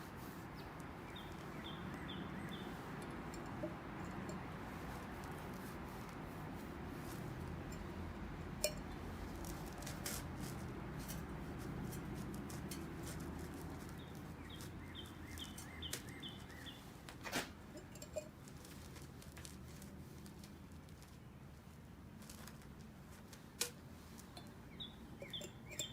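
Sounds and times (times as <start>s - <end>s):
low background noise: 0.0s - 25.9s
high chirps: 24.7s - 25.9s.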